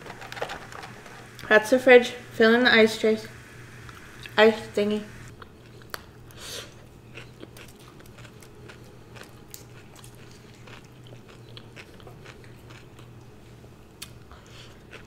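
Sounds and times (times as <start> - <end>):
person biting and chewing food: 7.0 - 13.1.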